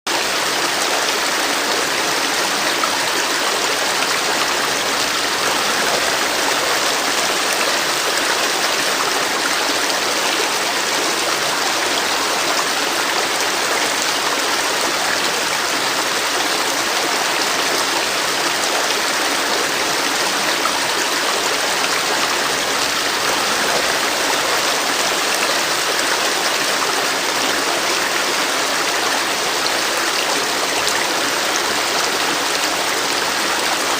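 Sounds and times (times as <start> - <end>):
river water rushing over stones: 0.1 - 33.9.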